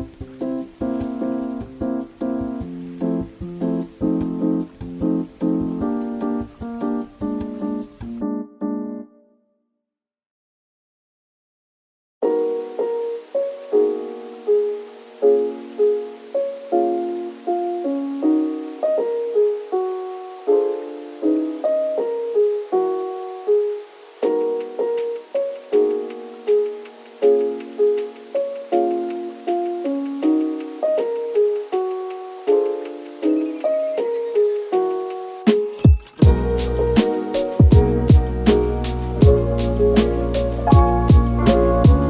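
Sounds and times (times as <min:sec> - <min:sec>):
mellow keyboard playing chords: 0:00.0 - 0:09.3, 0:12.2 - 0:42.0
light ticking percussion: 0:34.6 - 0:42.0.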